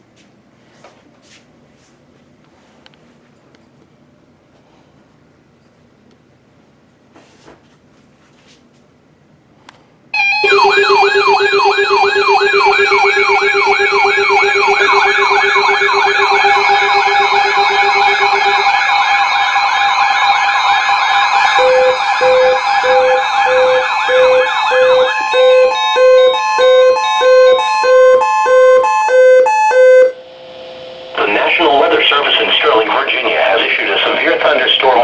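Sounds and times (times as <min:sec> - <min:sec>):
pulsing beeping tone: 0:10.2 - 0:31.3
warbling electronic siren: 0:10.2 - 0:32.2
high steady tones: 0:10.2 - 0:34.5.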